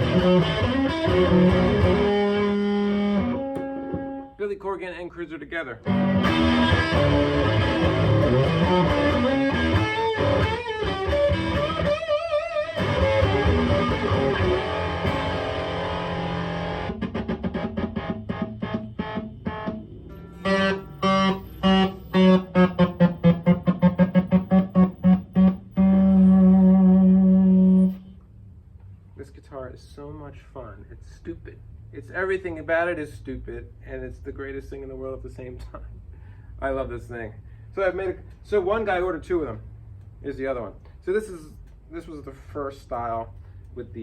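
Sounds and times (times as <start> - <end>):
electric guitar chords: 0.0 - 4.4, 5.8 - 28.1.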